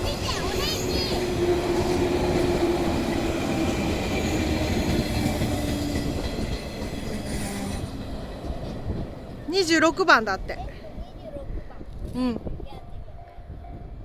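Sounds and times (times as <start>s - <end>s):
train wheels rumbling on rails: 0.0s - 14.0s
train motor hum: 0.1s - 10.0s.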